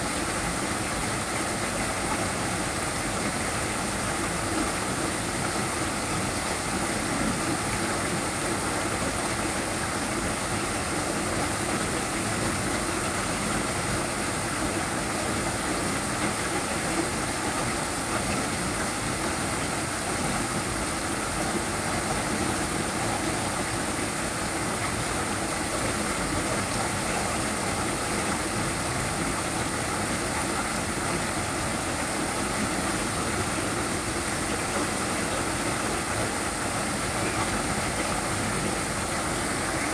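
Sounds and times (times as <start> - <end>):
waterfall splashing: 0.0 - 39.9.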